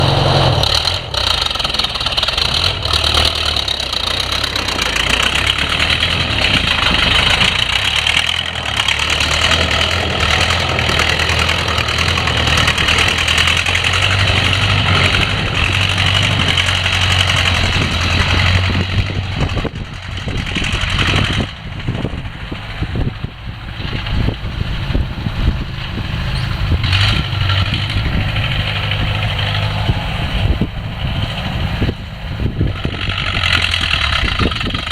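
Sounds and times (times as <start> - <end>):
tractor engine running hard: 0.0 - 34.9.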